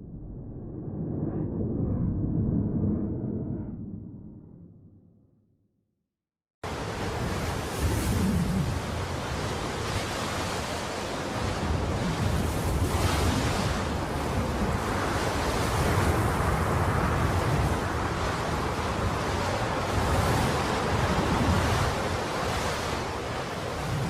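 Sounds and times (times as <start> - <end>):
low rumble: 0.0 - 5.7.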